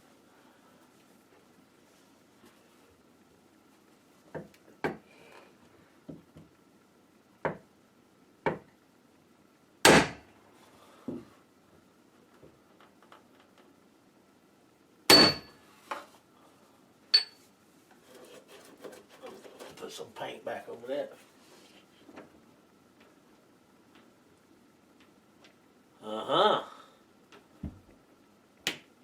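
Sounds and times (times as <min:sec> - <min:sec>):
sledgehammer striking brass: 0:15.1 - 0:15.5.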